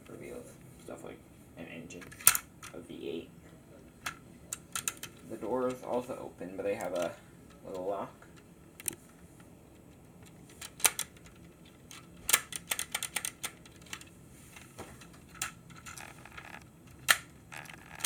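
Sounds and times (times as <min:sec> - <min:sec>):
plastic parts clicking: 0:04.0 - 0:06.1, 0:06.8 - 0:07.9, 0:08.8 - 0:09.0, 0:09.7 - 0:18.0.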